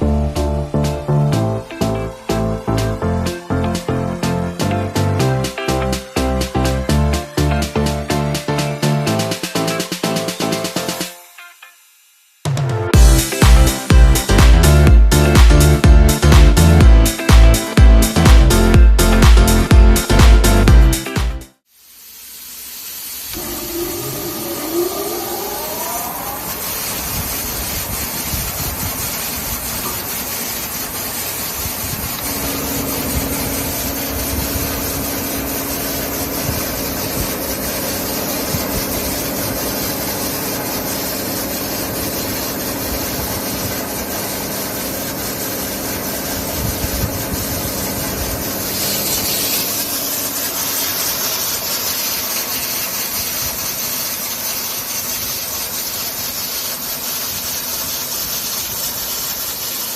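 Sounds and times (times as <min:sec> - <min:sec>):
belt sander whirring hiss: 0:00.8 - 0:11.3, 0:21.8 - 0:59.9
bright hiss: 0:21.6 - 0:59.9
steady hum: 0:23.3 - 0:51.3.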